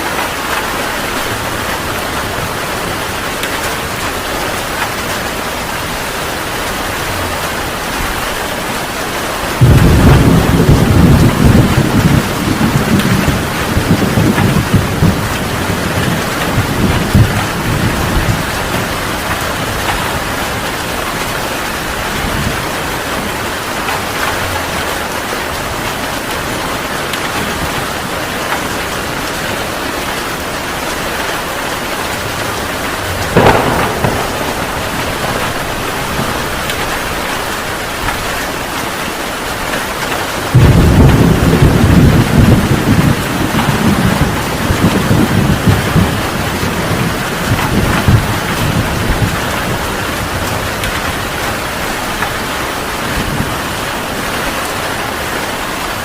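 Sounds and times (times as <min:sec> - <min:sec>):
heavy rain pouring: 0:00.0 - 0:56.0
thunder rumbling: 0:00.1 - 0:08.6, 0:09.2 - 0:56.0
sharp thunderclap: 0:09.6 - 0:21.2, 0:33.3 - 0:38.7, 0:40.5 - 0:51.5.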